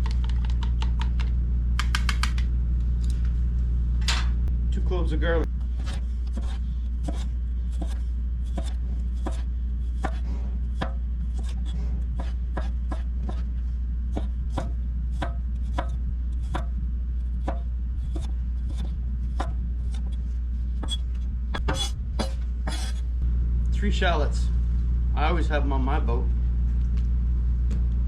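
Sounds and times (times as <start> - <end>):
low hum: 0.0 - 28.0
knife chopping on cutting board: 5.8 - 9.4, 10.0 - 10.2, 12.2 - 13.4, 17.4 - 20.1.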